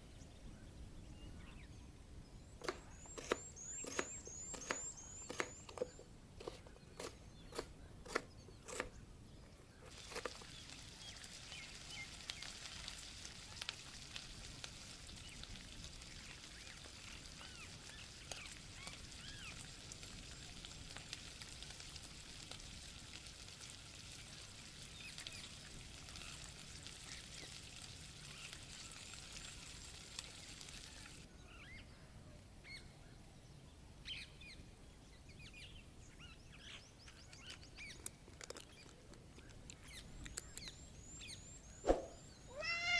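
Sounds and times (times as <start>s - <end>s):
small bird-like chirps: 0.0s - 12.4s, 35.2s - 42.9s.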